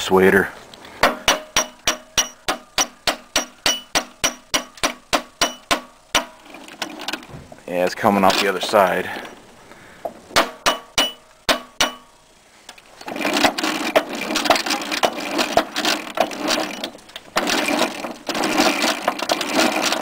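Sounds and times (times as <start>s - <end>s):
hammer striking steel pin: 1.0s - 6.4s, 10.4s - 12.2s
dense rough clattering: 1.0s - 12.2s, 12.8s - 20.0s.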